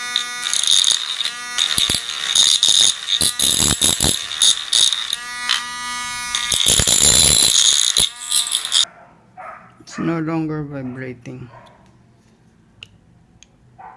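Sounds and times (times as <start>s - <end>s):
fan motor buzzing hum: 0.0s - 8.8s
clicking and rattling: 0.1s - 5.6s, 6.3s - 8.8s.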